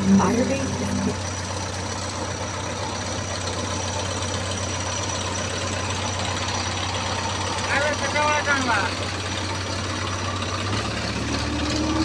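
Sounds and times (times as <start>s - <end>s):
diesel engine running steadily: 0.0s - 12.0s.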